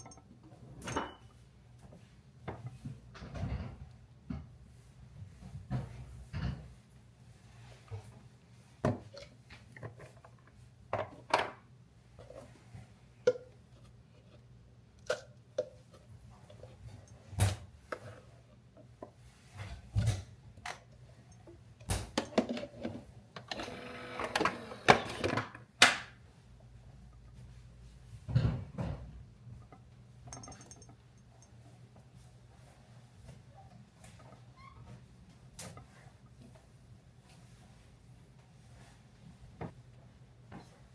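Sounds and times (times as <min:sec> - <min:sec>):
buzzing mechanical hum: 0:22.6 - 0:25.6.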